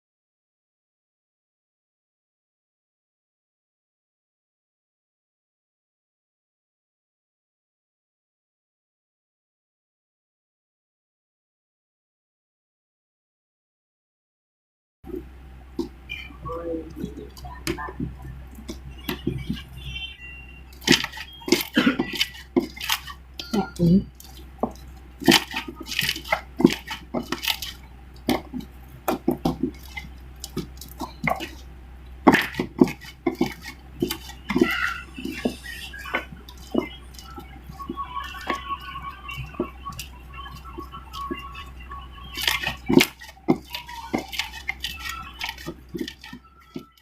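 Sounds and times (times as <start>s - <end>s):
slime squishing by hand: 15.1s - 47.0s.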